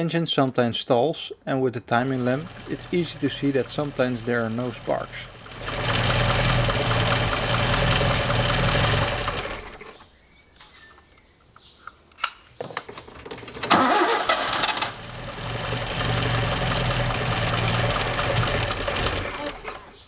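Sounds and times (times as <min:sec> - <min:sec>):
engine cranking: 0:01.9 - 0:10.1, 0:12.2 - 0:20.0
car engine running: 0:02.0 - 0:10.0, 0:13.8 - 0:20.0
clicks: 0:10.6 - 0:13.3.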